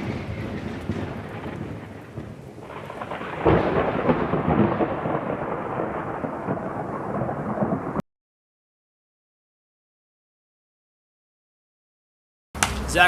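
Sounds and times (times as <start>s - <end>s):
sharp thunderclap: 0.0s - 8.0s
thunder rumble: 0.0s - 8.0s.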